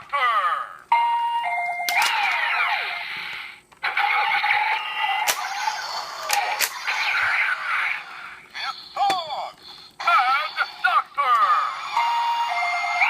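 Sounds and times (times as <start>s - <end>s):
toy electronic sound effects: 0.9s - 8.0s, 8.6s - 13.0s
steady electronic tone with hiss: 2.5s - 3.7s, 4.4s - 13.0s.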